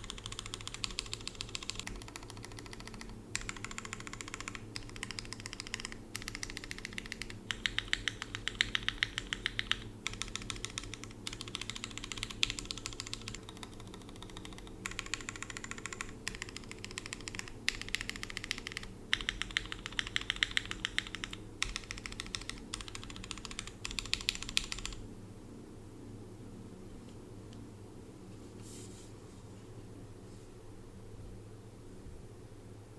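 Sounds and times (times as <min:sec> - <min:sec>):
fast typing on mechanical keyboard: 0:00.0 - 0:25.0.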